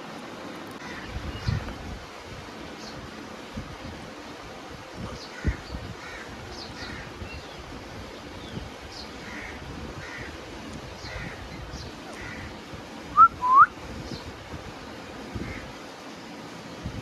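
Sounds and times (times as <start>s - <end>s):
small birds chirping: 2.6s - 16.9s
parrot whistles gliding upward: 13.2s - 13.7s.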